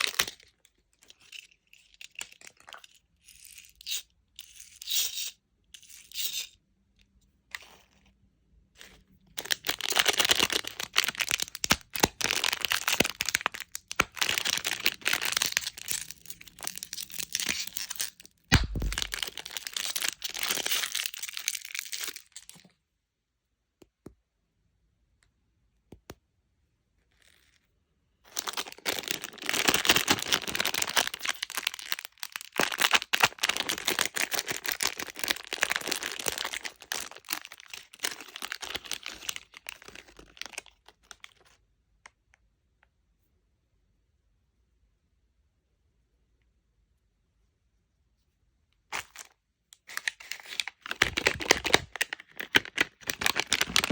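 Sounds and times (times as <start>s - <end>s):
plastic wrappers crinkling and tearing: 0.0s - 3.0s, 8.8s - 22.6s, 28.3s - 41.6s, 48.9s - 53.9s.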